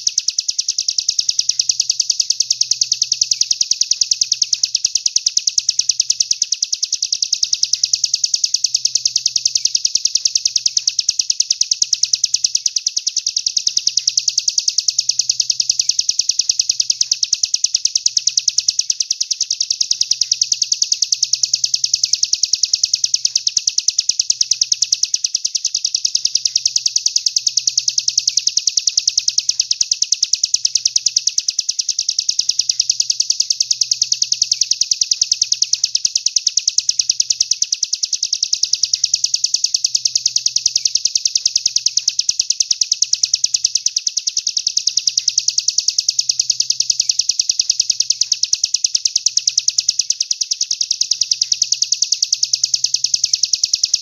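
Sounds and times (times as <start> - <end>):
songbird high-pitched trill: 7.1 - 54.0.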